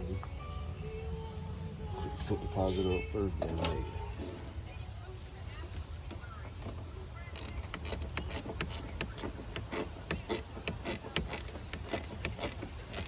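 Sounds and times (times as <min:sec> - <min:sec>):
metallic clicking of hand tools: 0:07.3 - 0:13.0.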